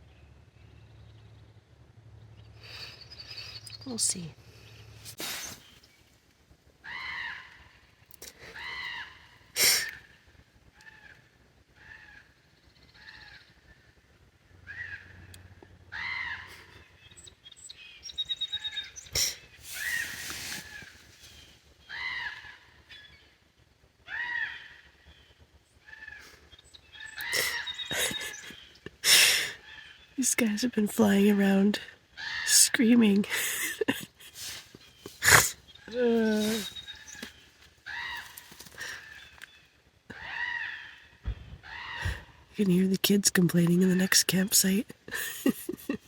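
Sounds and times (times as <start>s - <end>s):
crows cawing: 6.8s - 9.5s, 10.8s - 13.6s, 14.7s - 15.3s, 15.9s - 16.9s, 21.8s - 22.9s, 24.0s - 25.1s, 25.8s - 28.2s, 36.8s - 39.5s, 40.1s - 42.5s
rustling: 19.6s - 21.7s, 34.2s - 39.5s.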